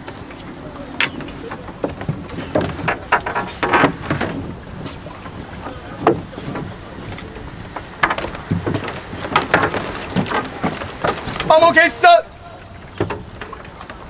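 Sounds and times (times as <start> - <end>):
oars knocking and splashing: 0.0 - 14.0
wind on microphone: 0.0 - 14.0.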